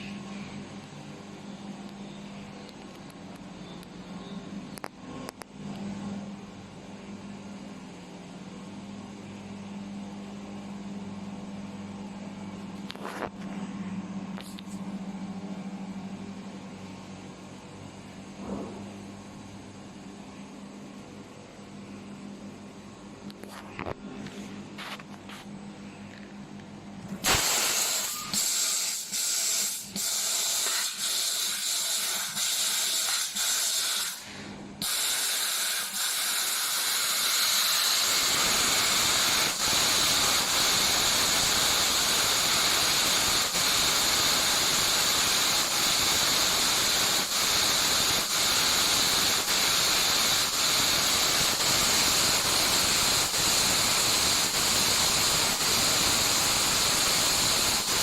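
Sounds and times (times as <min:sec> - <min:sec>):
laser cutter gas hiss: 0:27.2 - 0:58.0.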